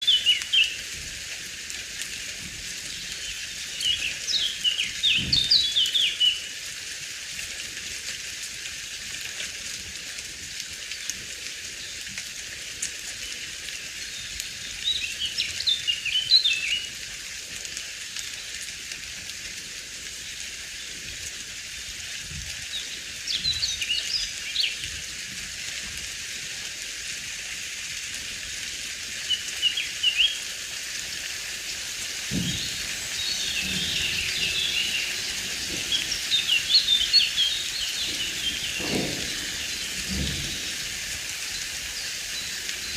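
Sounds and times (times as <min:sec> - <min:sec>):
songbird twittering: 0:03.2 - 0:06.5, 0:32.3 - 0:40.9
steady high hiss: 0:26.3 - 0:42.9.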